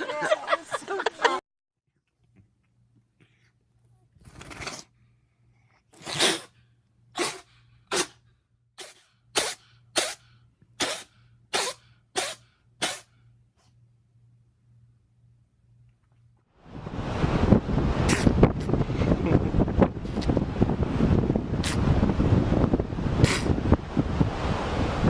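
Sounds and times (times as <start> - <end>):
animal sneezing: 6.0 - 6.6, 7.2 - 8.2, 8.8 - 13.1, 23.2 - 23.5.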